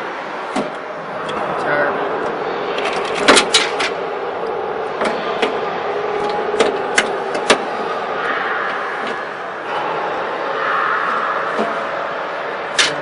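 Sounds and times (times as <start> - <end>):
noisy background hum: 0.0 - 13.0.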